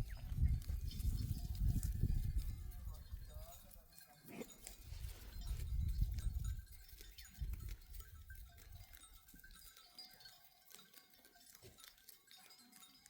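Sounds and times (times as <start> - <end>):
small clicks and clinks: 0.1 - 13.0
goats and sheep bleating: 1.5 - 3.3.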